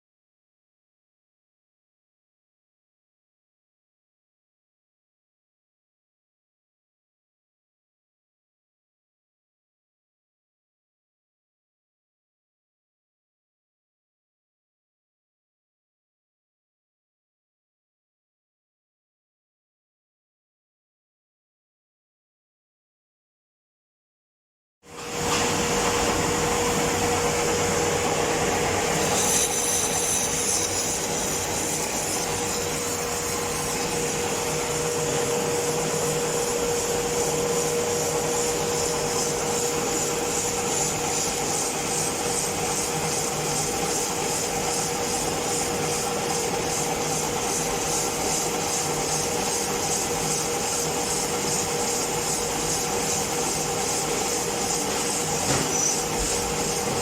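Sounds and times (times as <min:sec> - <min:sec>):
lathe tool scraping metal: 0:25.0 - 0:57.0
metal lathe humming: 0:25.0 - 0:57.0.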